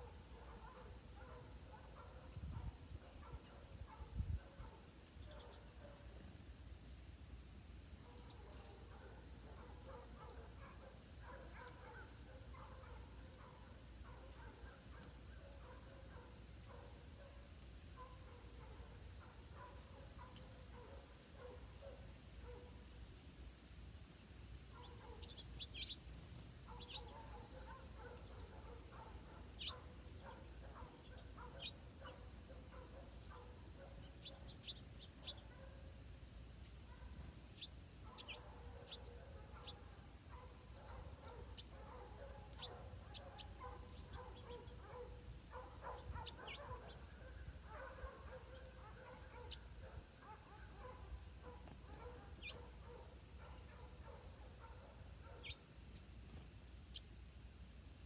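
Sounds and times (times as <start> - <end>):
birds chattering: 24.7 - 35.7, 36.8 - 47.1
high bird chirps: 24.8 - 26.1.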